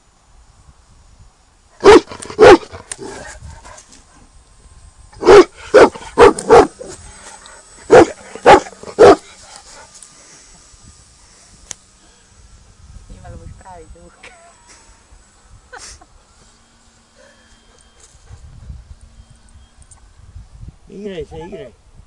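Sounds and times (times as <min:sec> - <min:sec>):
dog barking: 0:01.8 - 0:02.7, 0:05.2 - 0:06.8, 0:07.9 - 0:09.3.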